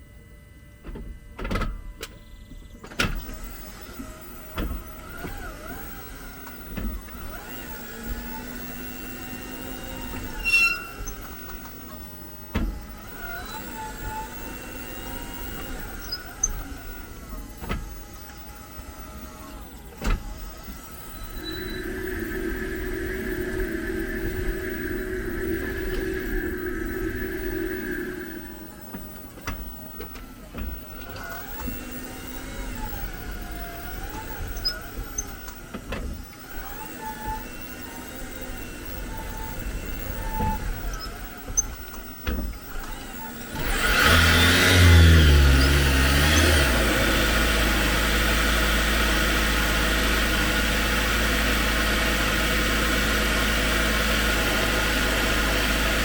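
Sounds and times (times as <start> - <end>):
faint wavering squeaks: 3.4 - 46.8
steady tone: 18.0 - 35.7.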